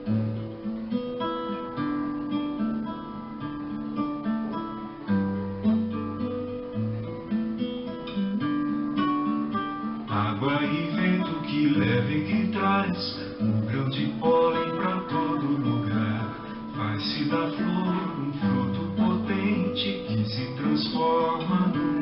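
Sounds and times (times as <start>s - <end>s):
acoustic guitar playing: 0.0s - 22.0s
person singing: 10.0s - 22.0s.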